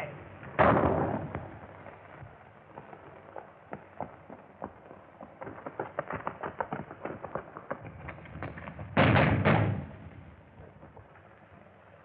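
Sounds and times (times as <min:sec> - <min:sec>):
gunshots: 0:00.6 - 0:01.7, 0:09.0 - 0:10.1
galloping horse hoofbeats: 0:02.7 - 0:11.7.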